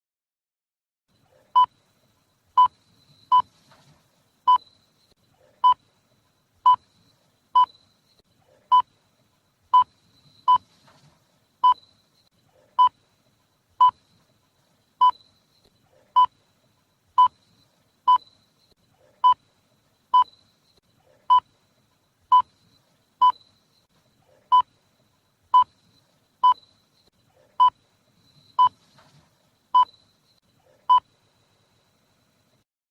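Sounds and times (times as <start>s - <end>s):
patient monitor beeps: 1.5s - 1.8s, 2.6s - 3.5s, 4.5s - 9.0s, 9.7s - 10.7s, 11.6s - 13.0s, 13.8s - 14.1s, 15.0s - 16.6s, 17.2s - 19.5s, 20.1s - 21.6s, 22.3s - 28.8s, 29.8s - 32.0s.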